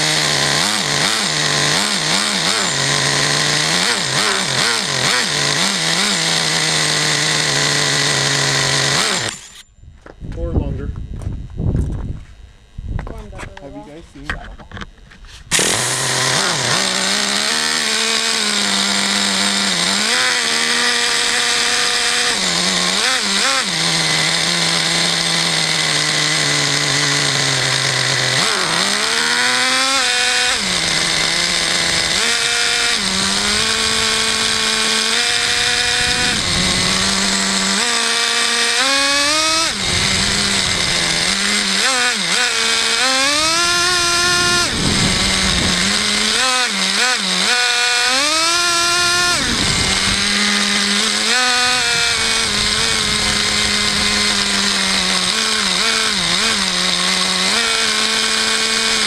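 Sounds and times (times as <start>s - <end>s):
rc car engine revving: 0.0s - 9.6s, 12.7s - 59.0s.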